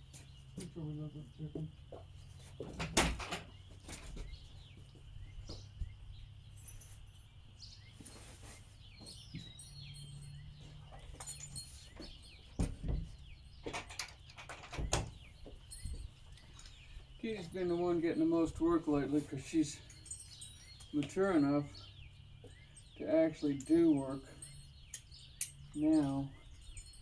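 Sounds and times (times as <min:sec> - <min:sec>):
birds chirping: 0:00.0 - 0:27.0
knocks and rustles near microphone: 0:01.5 - 0:06.0, 0:12.0 - 0:16.2.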